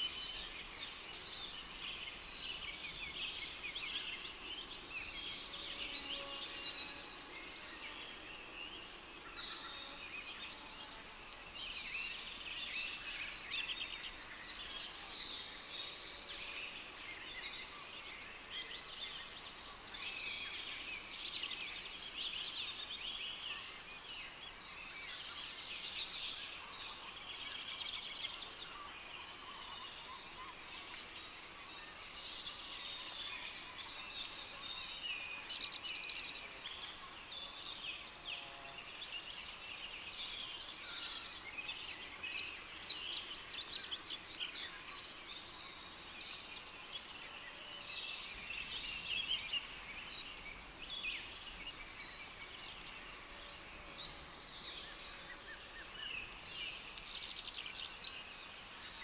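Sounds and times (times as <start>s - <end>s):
cricket chirping: 38.6s - 59.0s.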